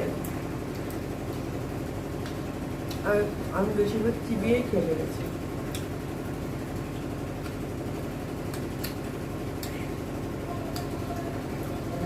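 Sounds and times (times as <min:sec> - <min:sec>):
low mechanical hum: 0:00.0 - 0:12.0
person eating and chewing: 0:08.4 - 0:11.9.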